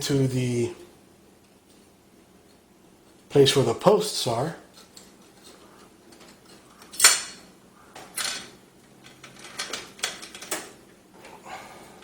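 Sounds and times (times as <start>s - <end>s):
metal parts clicking and clinking: 4.8s - 7.4s, 8.0s - 10.8s.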